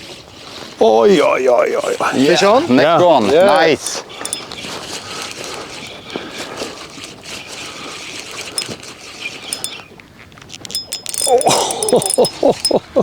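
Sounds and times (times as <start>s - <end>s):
wind: 0.0s - 13.0s
fishing reel grinding and clicking: 3.3s - 6.4s, 9.5s - 9.8s, 10.6s - 12.8s.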